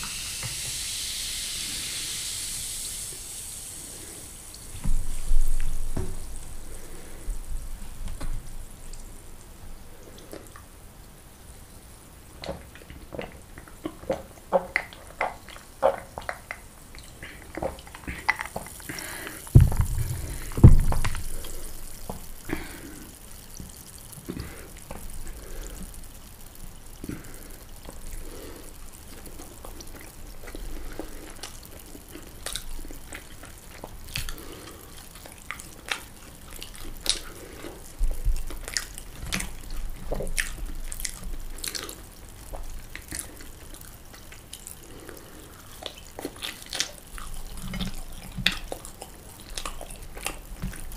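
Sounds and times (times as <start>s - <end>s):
wet chewing with mouth clicks: 12.4s - 50.9s
loud low thumps: 19.5s - 22.0s.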